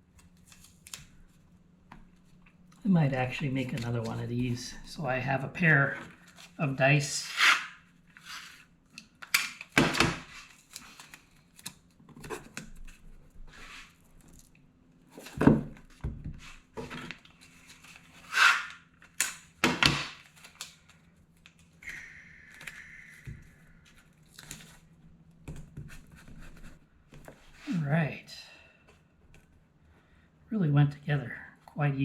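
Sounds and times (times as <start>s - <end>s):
low steady hum: 0.0s - 18.3s
adhesive tape pulled and torn: 18.2s - 19.4s.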